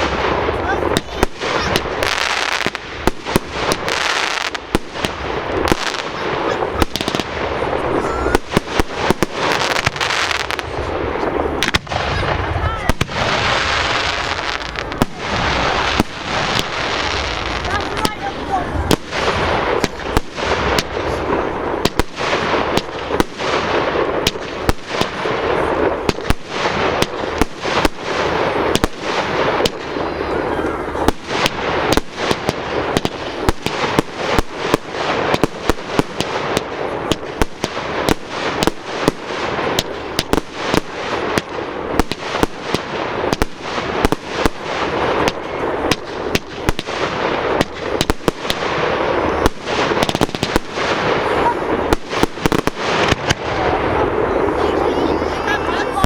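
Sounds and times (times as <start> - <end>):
fireworks bangs: 0.0 - 56.0
fireworks crackle: 0.0 - 56.0.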